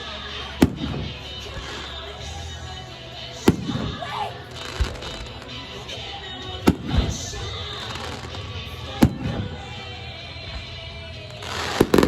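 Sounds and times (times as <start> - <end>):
music playing: 0.0 - 12.0
fireworks bangs: 0.6 - 2.1, 3.4 - 6.0, 6.6 - 9.8, 11.3 - 12.0.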